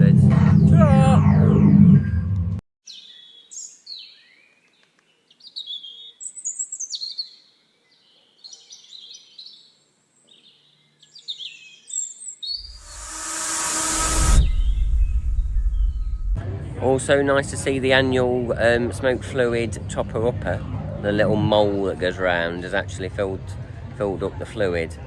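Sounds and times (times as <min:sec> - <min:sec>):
loud rushing hiss: 0:12.6 - 0:16.4.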